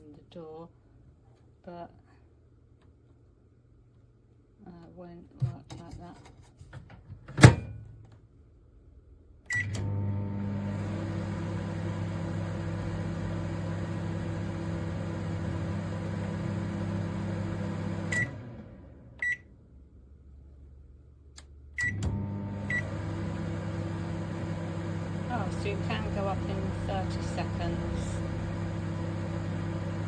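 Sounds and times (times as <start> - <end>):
microwave beeps: 9.5 - 10.7, 18.0 - 18.4, 19.2 - 19.5, 21.8 - 27.8
microwave oven humming: 9.5 - 19.6, 21.8 - 30.0.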